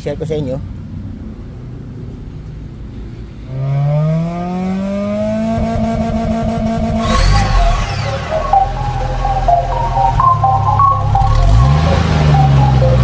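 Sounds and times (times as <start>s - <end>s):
car engine revving: 3.4s - 13.0s.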